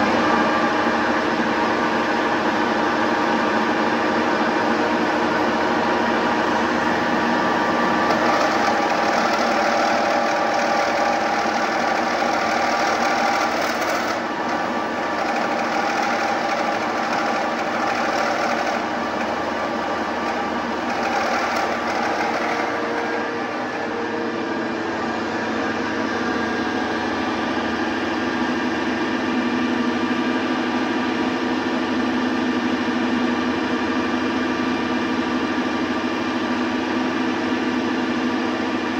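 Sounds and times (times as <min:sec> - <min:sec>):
metal lathe running: 0:00.0 - 0:30.8.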